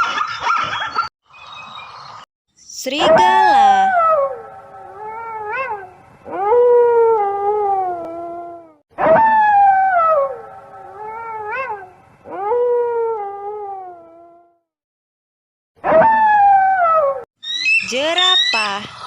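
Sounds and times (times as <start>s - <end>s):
wolf howling: 3.1s - 14.4s.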